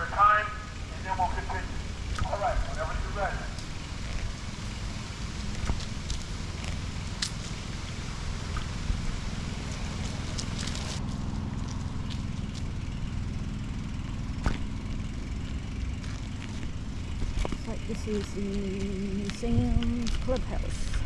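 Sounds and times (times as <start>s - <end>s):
wind rumble: 0.0s - 21.0s
bicycle tyre noise: 1.8s - 17.7s.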